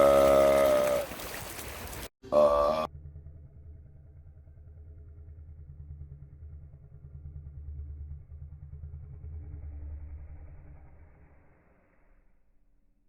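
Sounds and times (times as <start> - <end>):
engine rumbling: 2.3 - 12.0.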